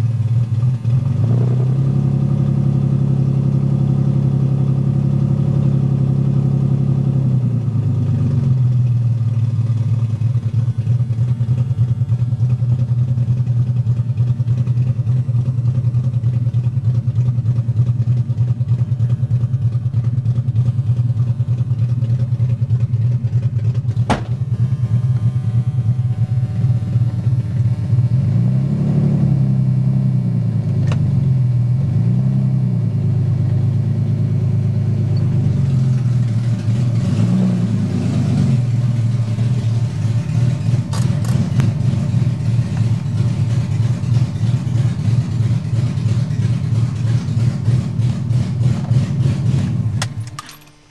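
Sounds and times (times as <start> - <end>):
car engine idling roughly: 0.0 - 29.2, 32.8 - 50.9
engine revving: 0.9 - 7.2, 23.7 - 50.9.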